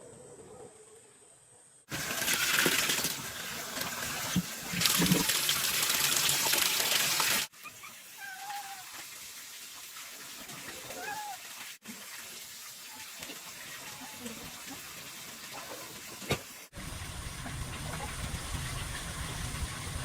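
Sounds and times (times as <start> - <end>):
water gushing from a tap: 1.9 - 20.0
cat meowing faintly: 8.2 - 9.0, 10.9 - 11.4.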